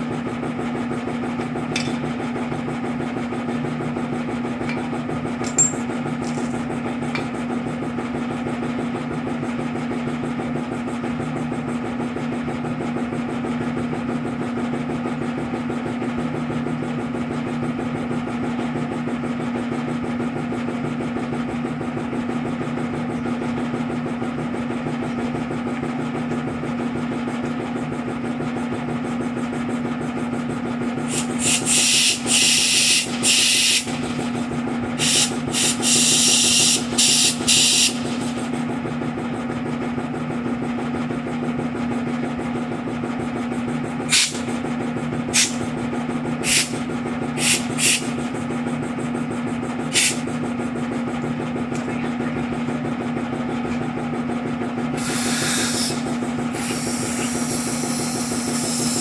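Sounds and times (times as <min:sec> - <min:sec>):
machine hum: 0:31.0 - 0:38.8, 0:55.0 - 0:59.0
loud hissing blasts: 0:31.1 - 0:38.5, 0:44.1 - 0:44.6, 0:45.3 - 0:45.7, 0:46.4 - 0:46.8, 0:47.4 - 0:48.2, 0:49.9 - 0:50.2, 0:55.0 - 0:59.0.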